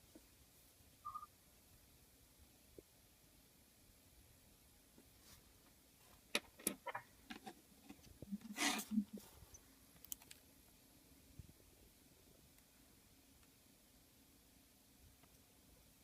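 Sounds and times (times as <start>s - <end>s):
faint sharp clicks and taps: 15.1s - 15.5s.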